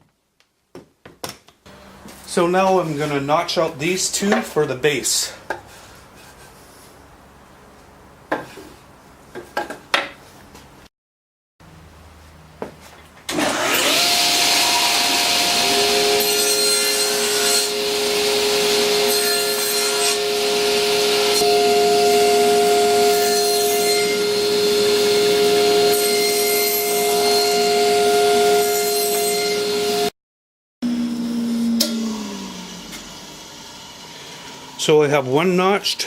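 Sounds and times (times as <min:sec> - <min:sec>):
power saw cutting wood: 0:13.3 - 0:30.1, 0:30.8 - 0:36.0.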